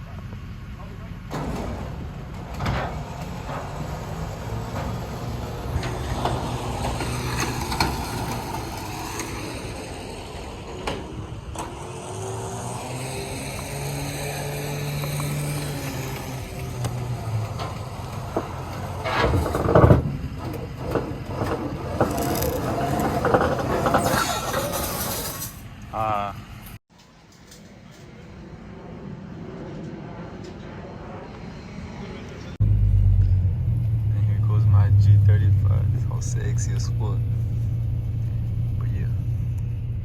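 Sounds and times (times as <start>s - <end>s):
motor vehicle engine running: 0.0s - 24.1s, 32.6s - 40.0s
knocks and clatter: 1.3s - 24.3s.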